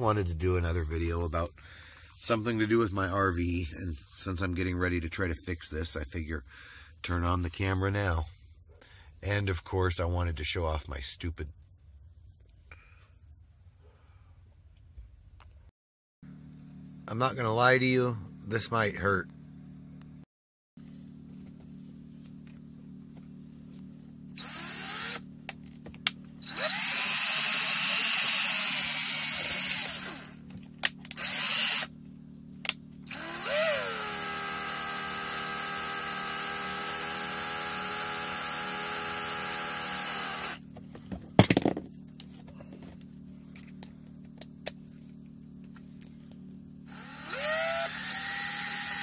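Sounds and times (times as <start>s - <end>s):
power drill whining: 24.3s - 25.3s, 26.3s - 31.9s, 33.0s - 40.6s, 46.5s - 49.0s.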